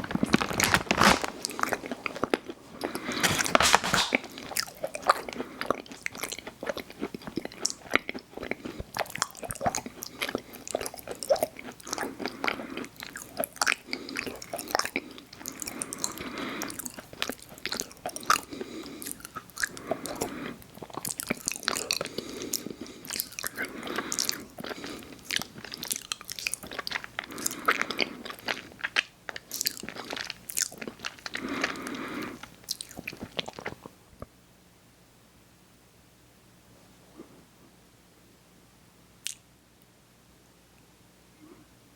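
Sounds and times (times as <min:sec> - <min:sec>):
person chewing cookies: 0:00.0 - 0:34.0
wet mouth clicks and smacks: 0:39.2 - 0:39.5.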